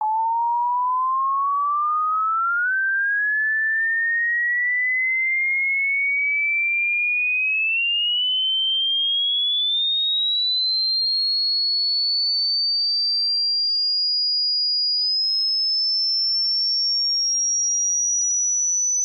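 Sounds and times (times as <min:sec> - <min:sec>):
rising sine tone sweep: 0:00.0 - 0:05.1, 0:15.3 - 0:19.0.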